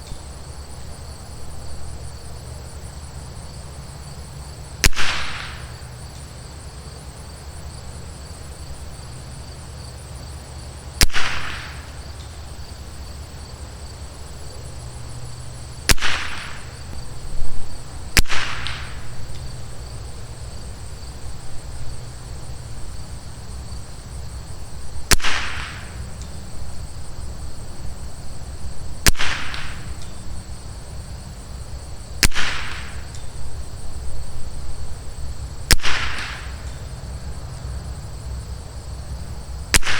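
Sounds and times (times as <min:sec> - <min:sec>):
rifle shots cracking: 0:04.8 - 0:05.9, 0:11.0 - 0:12.2, 0:15.9 - 0:17.0, 0:18.2 - 0:19.2, 0:25.1 - 0:26.1, 0:29.0 - 0:30.1, 0:32.2 - 0:33.3, 0:35.7 - 0:36.8.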